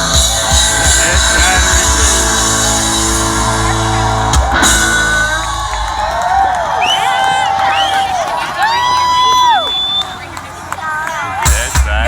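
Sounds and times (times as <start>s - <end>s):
live rock band playing: 0.0s - 6.5s, 11.4s - 12.0s.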